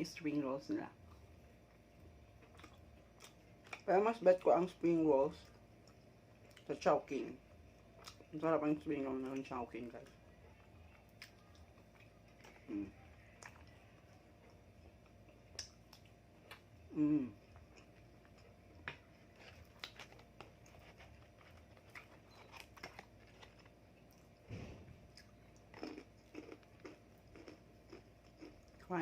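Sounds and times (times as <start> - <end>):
chewing and crunching: 0.9 - 29.0
person humming: 12.6 - 13.0, 16.9 - 17.4.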